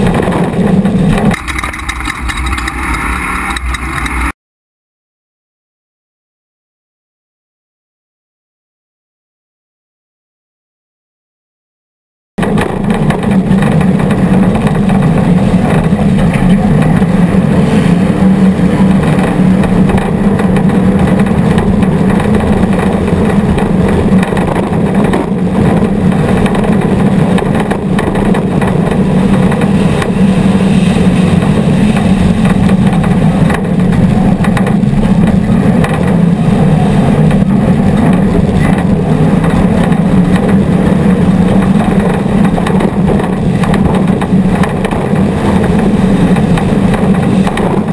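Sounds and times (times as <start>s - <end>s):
engine running at high revs: 0.0s - 4.3s, 12.4s - 47.9s.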